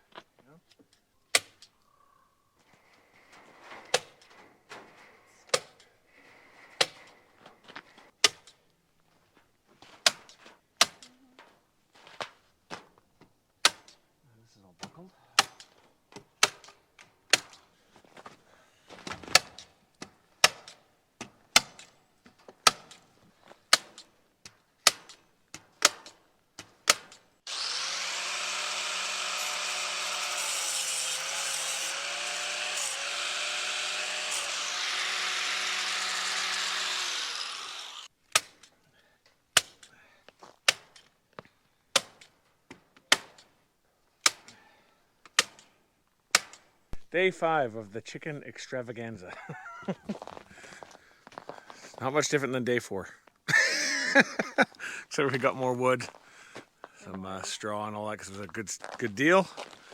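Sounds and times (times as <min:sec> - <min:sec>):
power tool running: 0:27.4 - 0:38.1.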